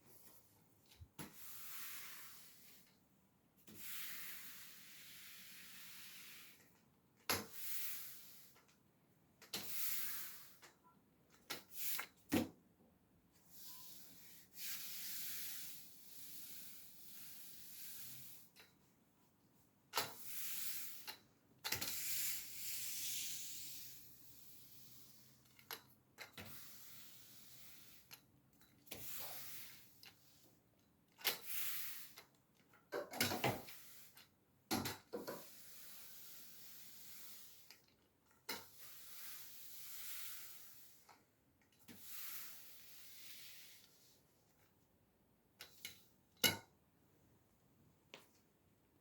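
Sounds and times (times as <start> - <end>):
broom sweeping a floor: 0.0 - 3.0, 3.6 - 8.8, 9.5 - 10.8, 11.5 - 12.6, 13.4 - 18.7, 19.6 - 30.6, 31.2 - 32.4, 33.2 - 34.3, 35.1 - 37.9, 38.5 - 44.5.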